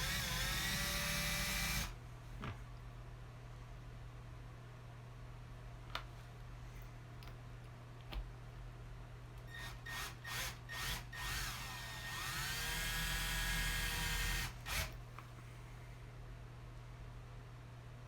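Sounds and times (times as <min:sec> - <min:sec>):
power drill running: 0:00.0 - 0:01.9, 0:09.5 - 0:15.0.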